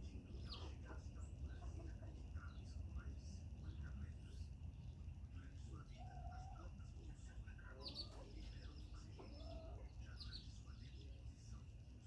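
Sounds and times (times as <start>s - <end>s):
chickens clucking: 7.7s - 10.4s.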